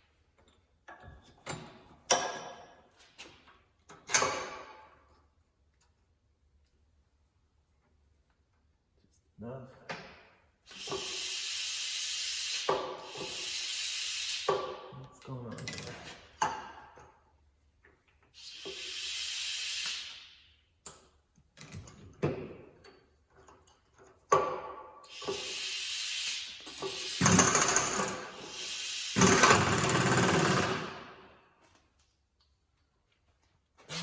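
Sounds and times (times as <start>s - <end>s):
pneumatic drawbar rattling and hissing: 10.6s - 14.9s, 18.4s - 20.4s, 25.0s - 30.8s.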